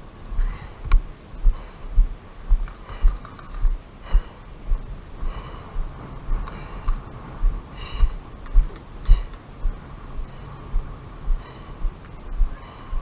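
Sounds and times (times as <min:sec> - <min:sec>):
heavy gasping breaths: 0:00.4 - 0:02.1, 0:02.7 - 0:08.3, 0:11.3 - 0:13.0.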